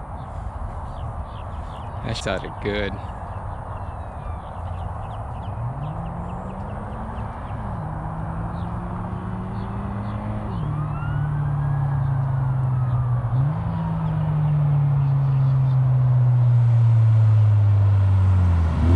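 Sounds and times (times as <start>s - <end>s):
car engine accelerating: 4.6s - 18.9s.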